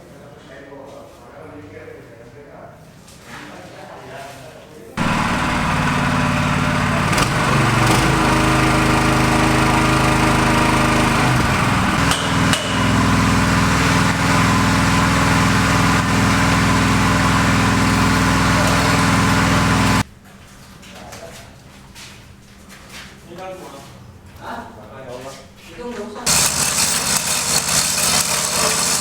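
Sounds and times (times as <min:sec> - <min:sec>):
small engine running: 0:05.0 - 0:20.0, 0:26.3 - 0:29.0
sharp knocks: 0:10.6 - 0:14.0.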